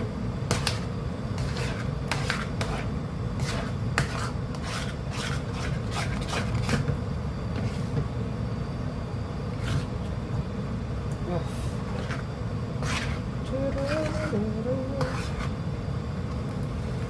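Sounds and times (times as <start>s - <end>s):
utensil scraping thick mixture: 0.5s - 6.9s, 7.5s - 8.0s, 9.5s - 10.0s, 11.7s - 15.6s.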